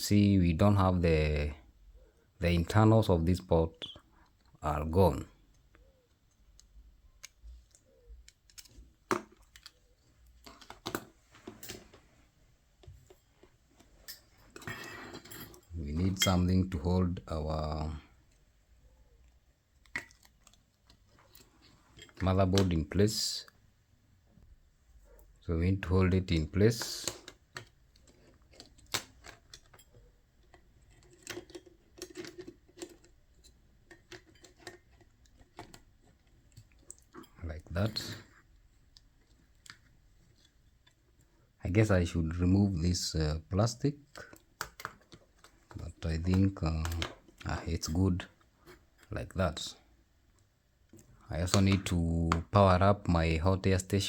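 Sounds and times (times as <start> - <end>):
small tools clicking and tapping: 5.3 - 12.0, 17.7 - 22.8, 26.3 - 41.4, 44.0 - 47.6.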